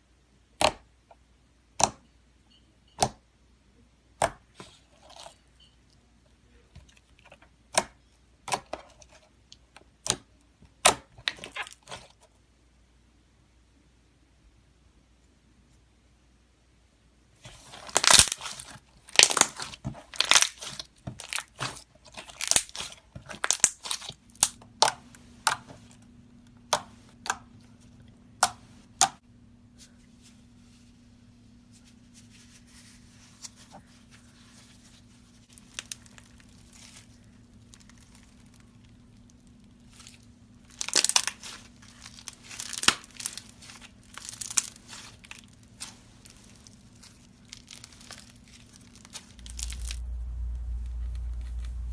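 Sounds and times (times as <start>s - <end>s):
slime crackling and popping: 17.6s - 25.6s, 35.5s - 51.9s.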